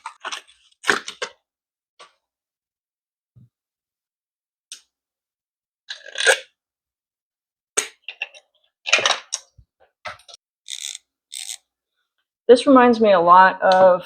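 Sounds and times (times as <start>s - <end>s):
hand ratchet clicking: 10.7s - 11.6s.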